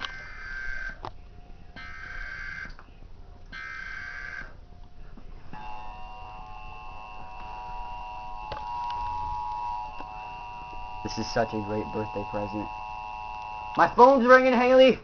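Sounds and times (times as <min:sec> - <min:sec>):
steady two-tone attention signal: 0:05.6 - 0:14.0
screeching digital header bursts: 0:05.6 - 0:14.9.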